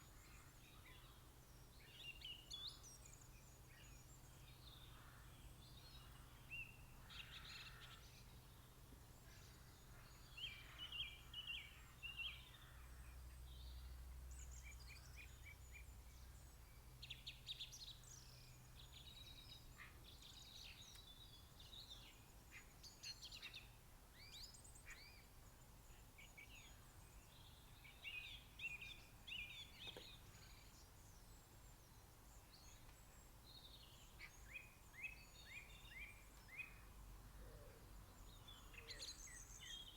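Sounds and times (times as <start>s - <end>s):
songbirds singing and calling: 0.0s - 39.9s.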